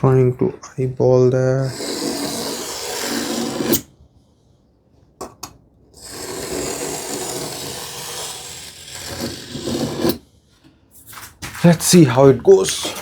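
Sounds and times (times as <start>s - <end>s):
knife scraping across plywood: 1.6s - 3.9s, 6.0s - 10.2s.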